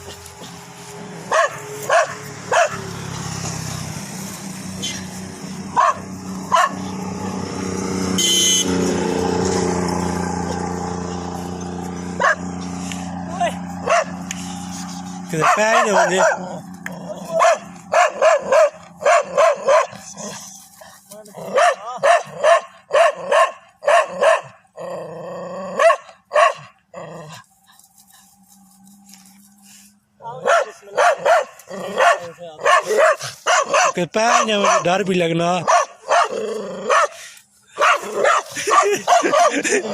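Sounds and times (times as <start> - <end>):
motor engine humming: 0.0 - 24.4
dog barking: 1.3 - 2.9, 5.8 - 6.9, 12.2 - 12.5, 13.8 - 14.2, 15.4 - 16.6, 17.3 - 20.4, 21.4 - 24.6, 25.7 - 26.7, 30.2 - 35.0, 35.6 - 37.2, 37.8 - 39.6
dog growling: 15.3 - 17.6, 24.8 - 25.8, 26.9 - 27.4, 31.7 - 33.0, 36.2 - 37.1.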